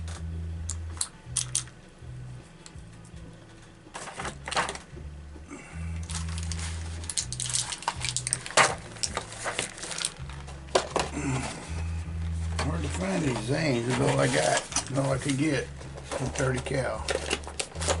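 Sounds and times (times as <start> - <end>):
metal objects clicking and clacking: 0.7 - 1.7, 7.0 - 10.1.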